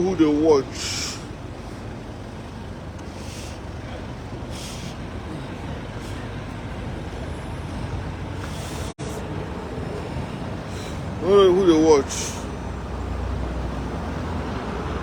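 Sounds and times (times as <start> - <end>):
vehicle engine rumbling: 0.0 - 15.0
short hisses: 0.7 - 1.3, 3.1 - 3.7, 4.4 - 6.3, 8.4 - 9.2, 12.1 - 12.6.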